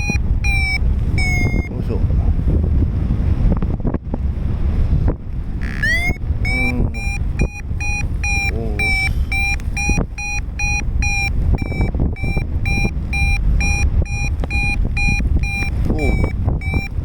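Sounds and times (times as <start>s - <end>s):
variometer short beeps: 0.0s - 1.9s, 5.6s - 17.0s
wind on microphone: 0.0s - 17.0s.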